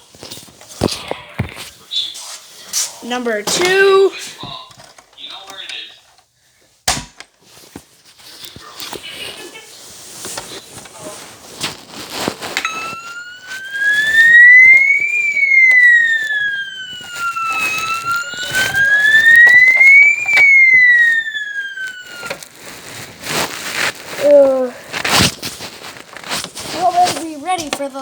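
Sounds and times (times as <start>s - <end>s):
clicks and knocks: 6.9s - 7.4s
fire alarm wail sweeping: 12.4s - 23.4s.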